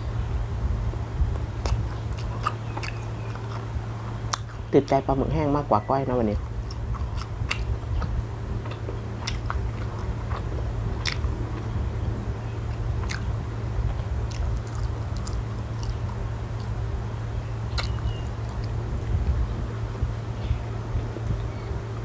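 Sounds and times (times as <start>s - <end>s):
low hum: 0.0s - 22.0s
person chewing food: 1.4s - 4.6s, 6.4s - 11.9s, 12.6s - 17.0s, 17.6s - 19.2s
food crunching: 1.6s - 5.0s, 6.3s - 19.2s.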